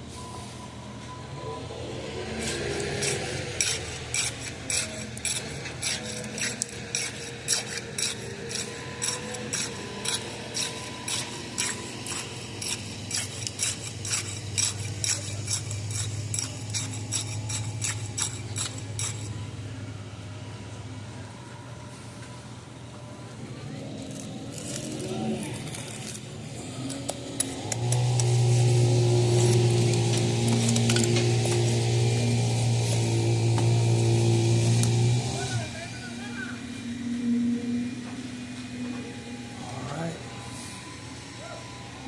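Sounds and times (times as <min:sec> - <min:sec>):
engine running: 0:00.0 - 0:42.0
hand tool scraping concrete: 0:02.1 - 0:19.6, 0:24.2 - 0:26.3, 0:27.4 - 0:36.5.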